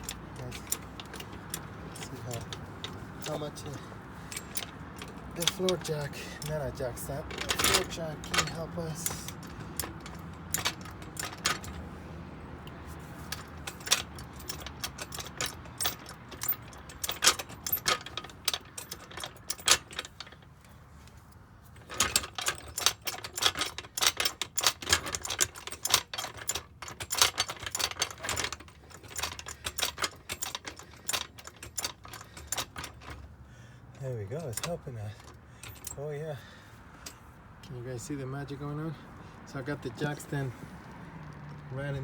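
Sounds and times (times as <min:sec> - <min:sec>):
hydraulic floor jack clicking and clanking: 0:00.0 - 0:11.9, 0:12.6 - 0:20.5, 0:21.8 - 0:33.4.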